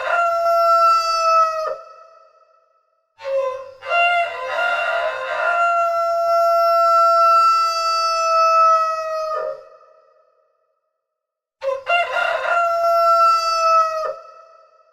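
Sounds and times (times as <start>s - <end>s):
rooster crowing: 0.0s - 2.0s, 3.2s - 10.0s, 11.6s - 14.7s.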